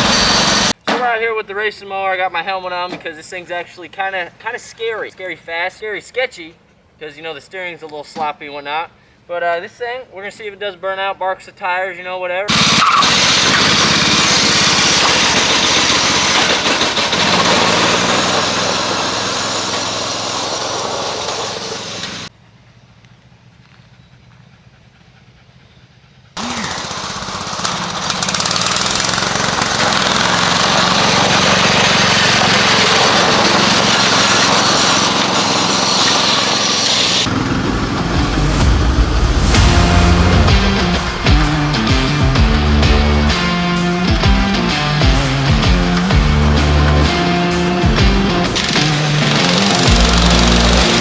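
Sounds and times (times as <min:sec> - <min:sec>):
lawn mower engine running hard: 0:00.0 - 0:00.8, 0:12.5 - 0:22.8, 0:26.4 - 0:51.0.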